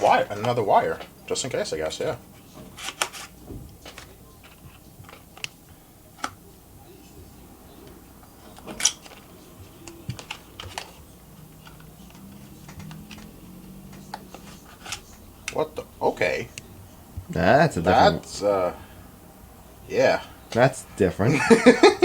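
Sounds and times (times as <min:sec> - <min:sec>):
packaging and accessories clicking: 0:08.4 - 0:15.6.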